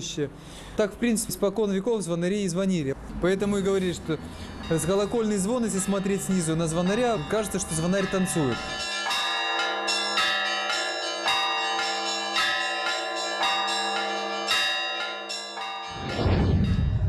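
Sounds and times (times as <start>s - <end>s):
small church bells ringing: 4.3s - 16.2s
large bell humming: 4.5s - 17.0s
loud low rumble: 15.9s - 17.0s.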